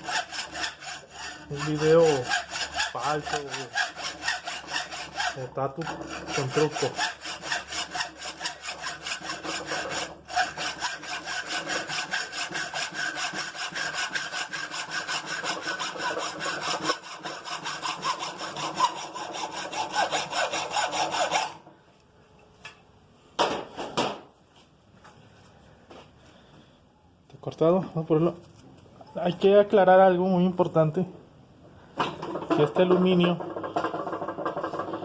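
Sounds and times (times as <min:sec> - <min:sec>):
hand saw cutting metal bar: 0:00.0 - 0:21.6.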